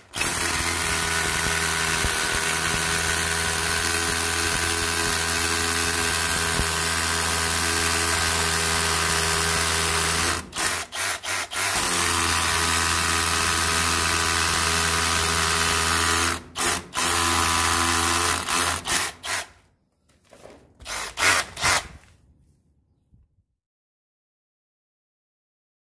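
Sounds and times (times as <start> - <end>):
rotary hammer running: 0.2 - 6.7.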